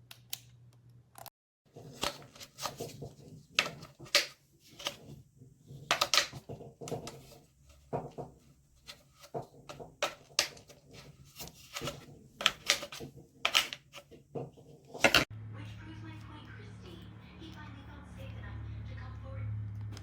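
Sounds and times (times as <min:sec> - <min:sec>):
objects clicking and rustling: 0:01.7 - 0:15.3.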